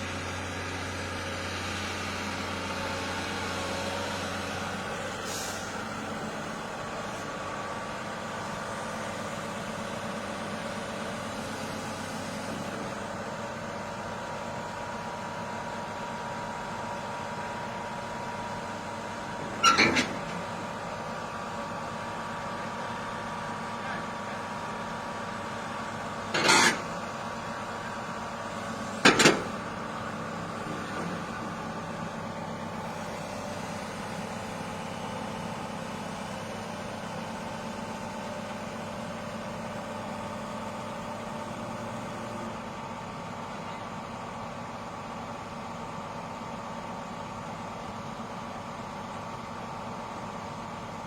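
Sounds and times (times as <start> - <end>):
heavy diesel engine running: 0.0 - 51.0.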